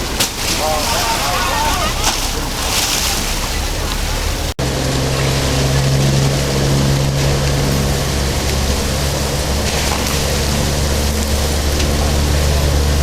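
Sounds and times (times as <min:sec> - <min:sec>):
rushing water: 0:00.0 - 0:05.7
boat diesel engine droning: 0:00.0 - 0:13.0.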